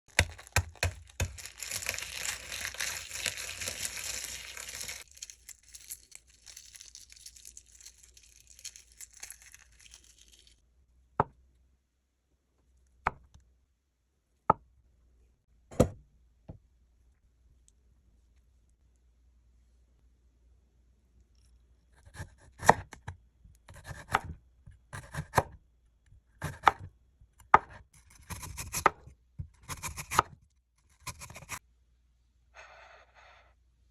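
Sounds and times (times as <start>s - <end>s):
dense crackling and crinkling: 0.0s - 10.6s.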